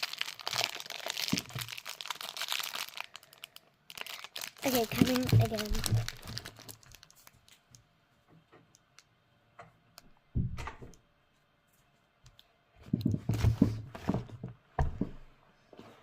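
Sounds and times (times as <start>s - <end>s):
packaging rustling: 0.0s - 7.7s.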